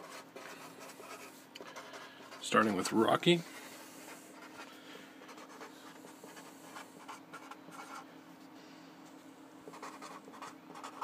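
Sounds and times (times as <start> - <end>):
pen scratching on paper: 0.0 - 2.8, 4.0 - 8.0, 9.6 - 11.0.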